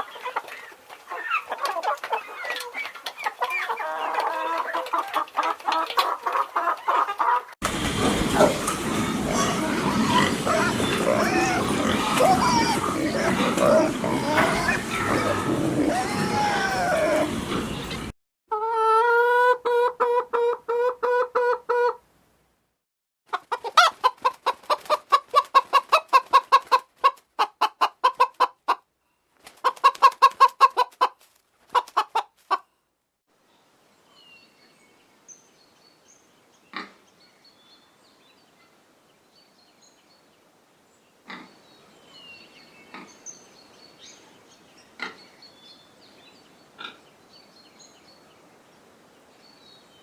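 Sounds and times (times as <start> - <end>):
chicken clucking: 0.0 - 22.0, 23.3 - 28.8, 29.6 - 32.6.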